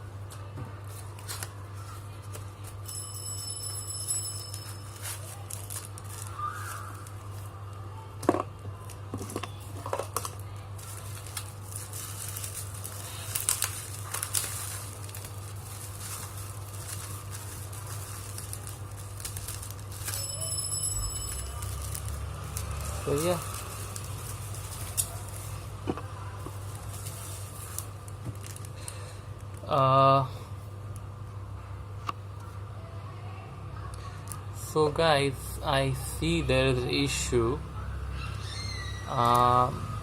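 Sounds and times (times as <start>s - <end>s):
packaging rustling and crinkling: 4.5s - 7.6s, 8.7s - 29.7s.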